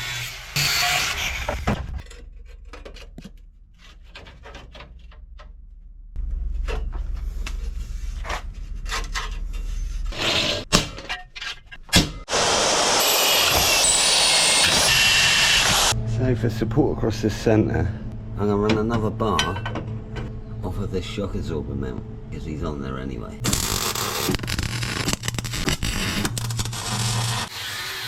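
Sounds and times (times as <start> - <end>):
power tool cutting: 0.0 - 1.7, 12.3 - 16.0, 23.4 - 28.0
knocks and clatter of parts: 1.4 - 5.8, 19.4 - 20.4
low rumble: 1.7 - 10.1, 15.7 - 25.5.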